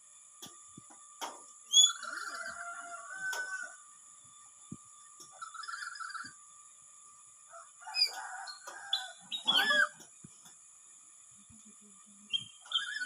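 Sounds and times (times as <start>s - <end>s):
parrot harsh calls: 5.4s - 6.3s, 9.0s - 10.0s, 12.7s - 13.0s.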